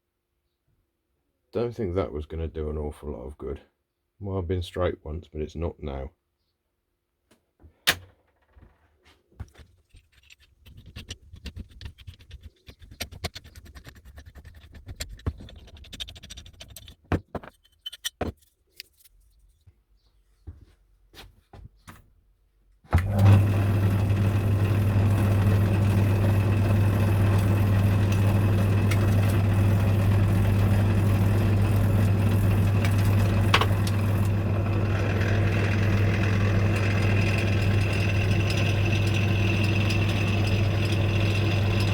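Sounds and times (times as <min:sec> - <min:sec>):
workshop machine humming: 0:23.0 - 0:41.9.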